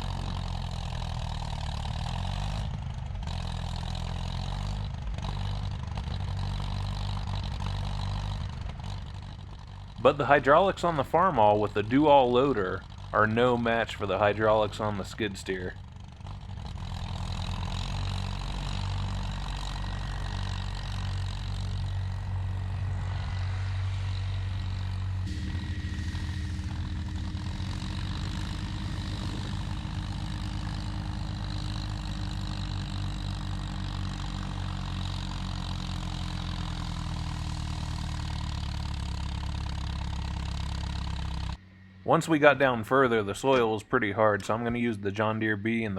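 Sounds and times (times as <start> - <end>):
earthmoving machine engine running: 0.0 - 45.9
steady hum: 22.1 - 33.0.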